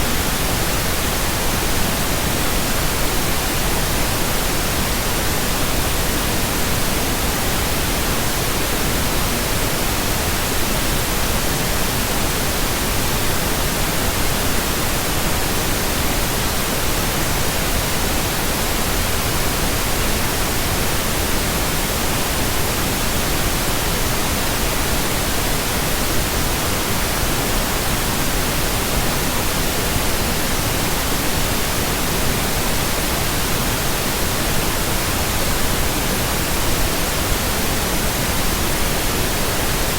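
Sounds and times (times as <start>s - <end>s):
steady pink noise hiss: 0.0s - 39.9s.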